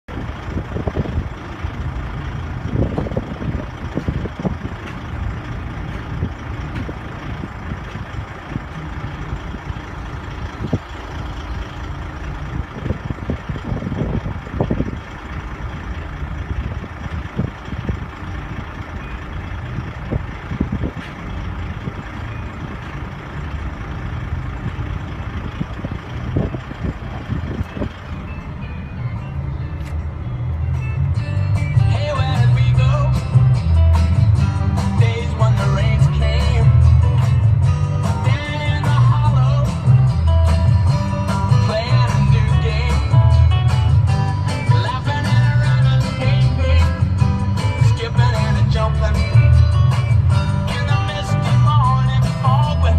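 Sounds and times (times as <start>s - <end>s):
wind buffeting microphone: 0.1s - 23.1s, 24.2s - 28.6s
low rumble: 0.1s - 52.9s.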